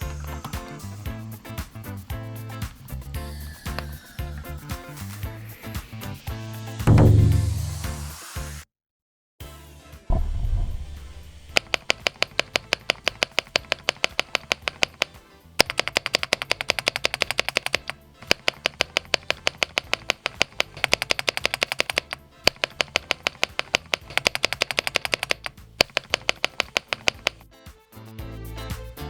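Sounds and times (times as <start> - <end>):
mechanical keyboard typing: 3.7 - 4.0, 10.8 - 27.5.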